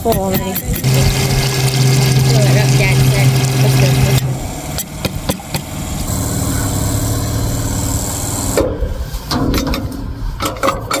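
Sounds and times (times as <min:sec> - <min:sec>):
motor humming with hiss: 0:00.8 - 0:08.8.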